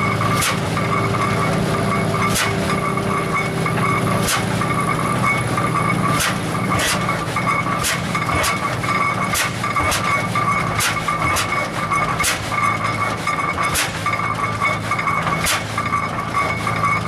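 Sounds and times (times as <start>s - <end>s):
engine firing beats: 0.0s - 17.0s
engine low rumble: 0.0s - 17.0s.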